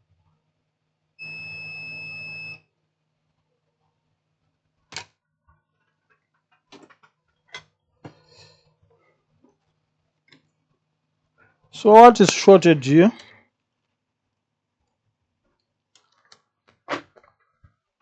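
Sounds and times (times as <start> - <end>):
multimeter continuity beep: 1.2 - 2.6.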